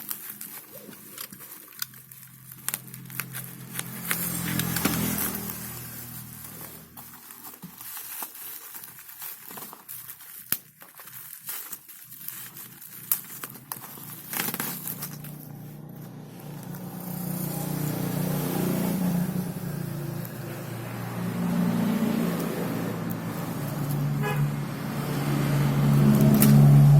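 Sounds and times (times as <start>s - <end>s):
plastic packaging crinkling: 0.0s - 26.9s
vehicle engine running: 2.1s - 7.4s, 13.8s - 26.9s.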